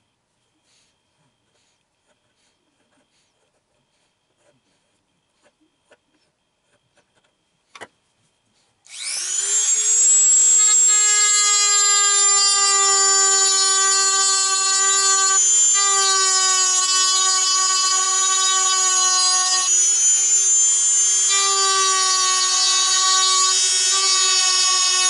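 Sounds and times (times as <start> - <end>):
rotary tool whining: 8.9 - 25.0.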